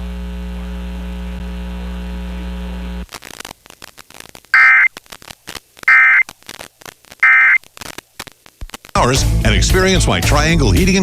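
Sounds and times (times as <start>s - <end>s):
mains hum: 0.0s - 9.1s
radio static crackling: 3.0s - 9.0s
warbling data tones: 4.6s - 4.9s, 5.9s - 6.3s, 7.2s - 7.6s.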